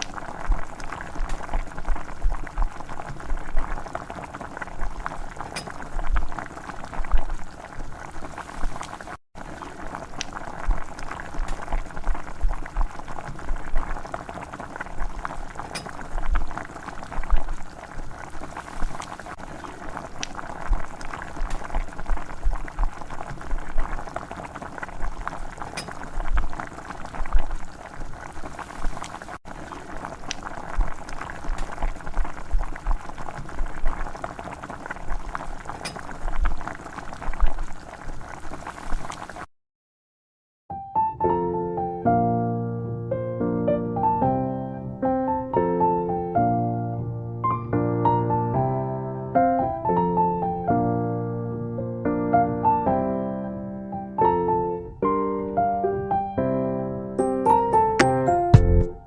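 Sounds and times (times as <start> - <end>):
curry bubbling in a pot: 0.0 - 39.5.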